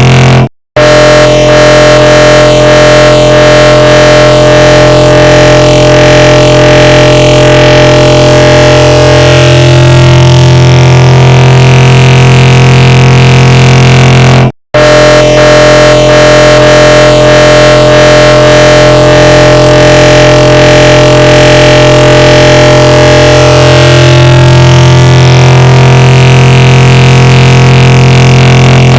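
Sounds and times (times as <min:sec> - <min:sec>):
distorted stacked voice drone: 0:00.0 - 0:28.9.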